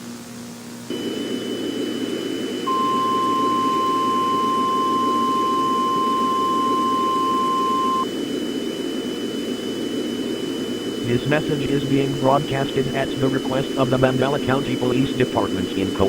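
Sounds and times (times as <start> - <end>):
low static hum: 0.0 - 16.0
faint high whistle: 2.7 - 8.1.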